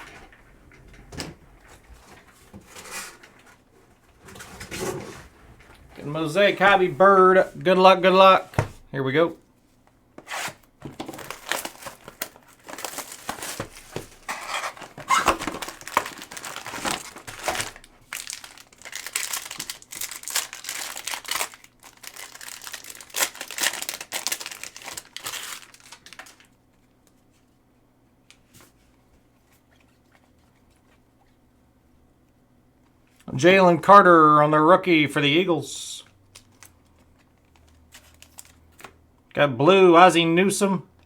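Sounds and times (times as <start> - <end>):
faint steady hum: 0.0 - 41.0
card wrappers crinkling and ripping: 10.4 - 26.6, 36.3 - 39.0.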